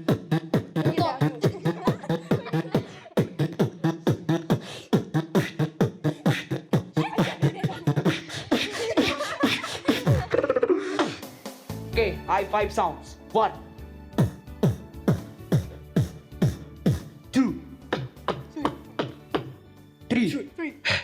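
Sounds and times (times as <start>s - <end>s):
person beatboxing: 0.0s - 11.3s, 14.2s - 17.1s, 18.0s - 19.5s.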